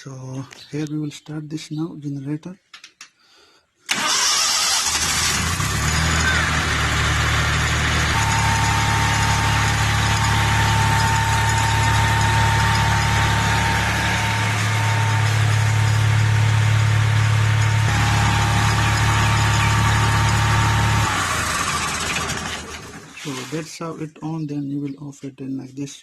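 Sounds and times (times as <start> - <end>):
generator engine humming: 3.9 - 23.7
generator whine: 3.9 - 23.7.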